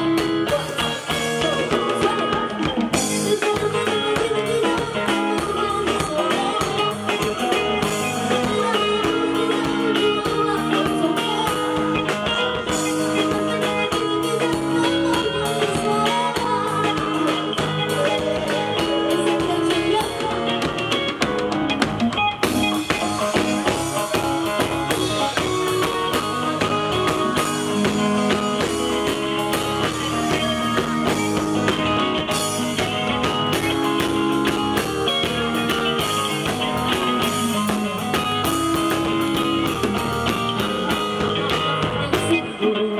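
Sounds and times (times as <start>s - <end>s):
drum kit: 0.0s - 42.9s
guitar: 0.0s - 42.9s
person singing: 0.0s - 42.9s.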